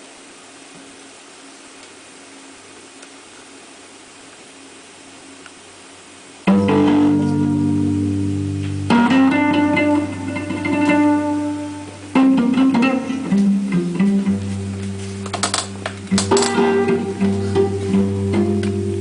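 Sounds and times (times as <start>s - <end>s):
guitar chords ringing: 6.4s - 19.0s.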